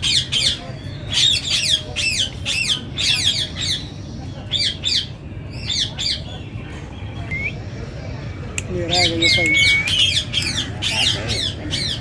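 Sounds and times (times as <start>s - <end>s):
bird chirping: 8.7s - 12.0s.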